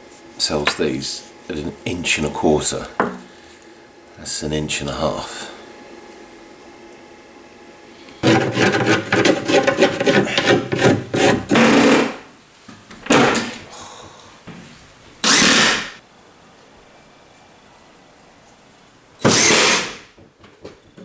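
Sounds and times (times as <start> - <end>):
hand tool rasping: 8.2 - 12.2.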